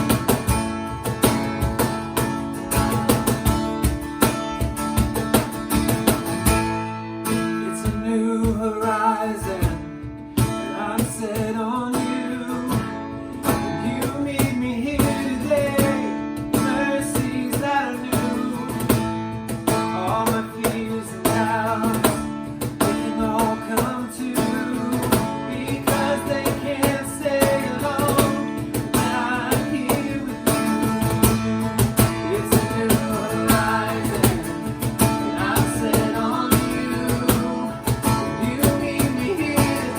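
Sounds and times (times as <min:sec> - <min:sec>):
strummed acoustic guitar: 0:00.0 - 0:39.9
person singing: 0:13.5 - 0:19.0, 0:19.8 - 0:39.9.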